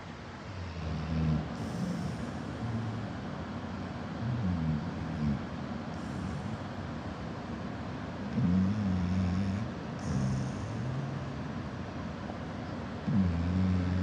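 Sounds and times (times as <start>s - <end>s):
background hiss: 0.0s - 14.0s
dog snoring: 0.5s - 3.1s, 4.2s - 6.7s, 8.3s - 11.4s, 13.0s - 14.0s.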